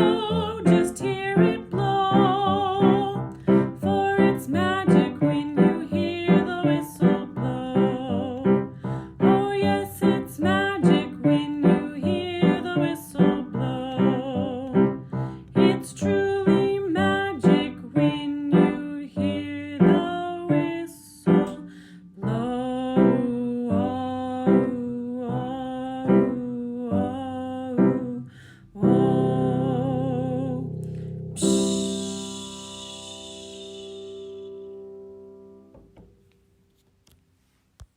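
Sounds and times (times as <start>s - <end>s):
keyboard accompaniment: 0.0s - 25.0s, 26.1s - 36.3s
woman singing: 0.0s - 34.7s
short hiss: 31.4s - 34.8s.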